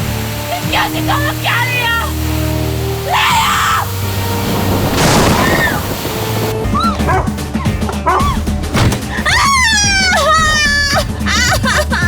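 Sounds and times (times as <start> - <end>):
background music: 0.0 - 12.0
whooshing swell: 3.7 - 7.6.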